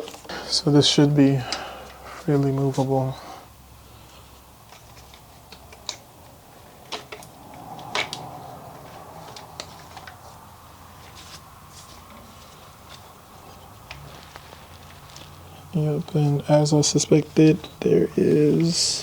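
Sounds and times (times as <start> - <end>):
engine parts clicking and knocking: 4.1 - 11.3.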